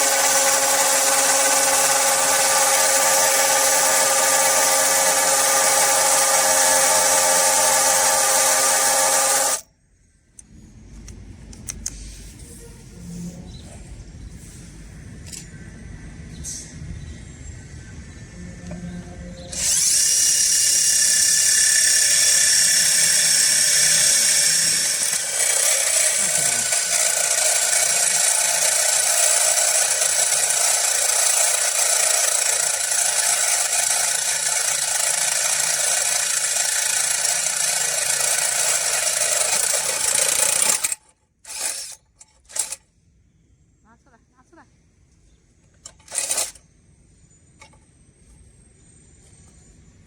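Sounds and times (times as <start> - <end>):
power drill grinding whine: 0.0 - 9.6, 18.6 - 42.8, 45.9 - 46.6.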